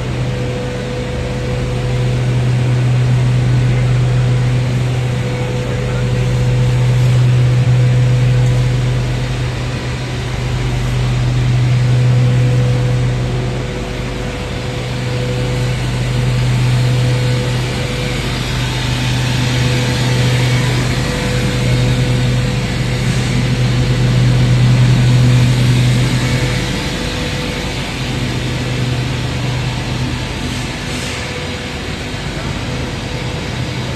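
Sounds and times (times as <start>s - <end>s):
industrial machinery humming: 0.0s - 33.9s.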